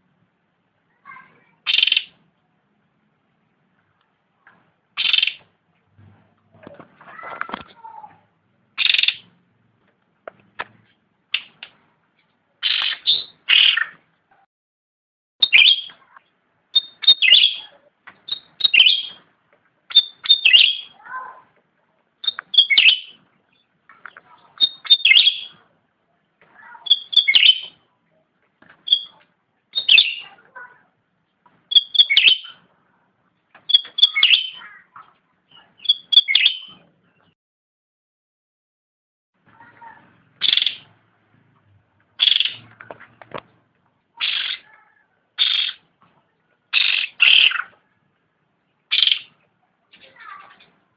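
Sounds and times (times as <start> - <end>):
songbird singing sharp high notes: 15.4 - 16.0.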